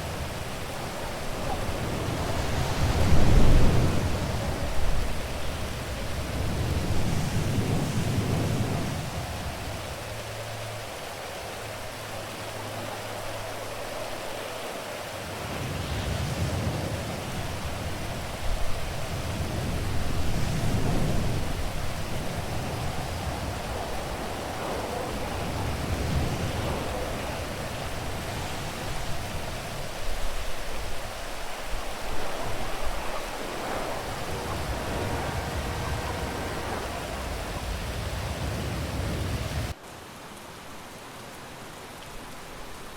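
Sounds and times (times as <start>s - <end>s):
steady rain: 0.0s - 42.9s
rolling thunder: 31.7s - 39.7s.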